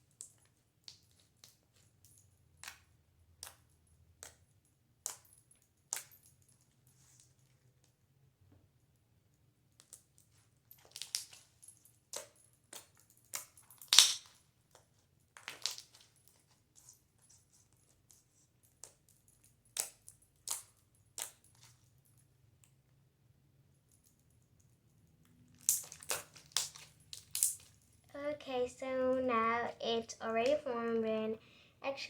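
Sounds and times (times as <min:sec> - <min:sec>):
slime popping and crackling: 0:13.3 - 0:14.3, 0:15.4 - 0:15.9, 0:25.5 - 0:27.7.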